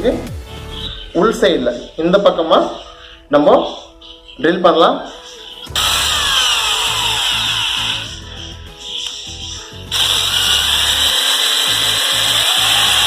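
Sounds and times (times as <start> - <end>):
power drill boring into pipe: 5.7 - 8.2, 9.9 - 13.0.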